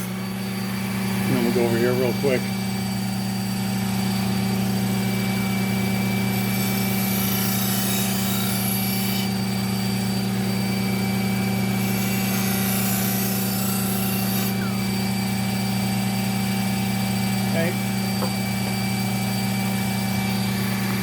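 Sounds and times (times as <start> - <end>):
sharpening machine motor hum: 0.0 - 21.0
knife hissing on polishing wheel: 11.8 - 15.1.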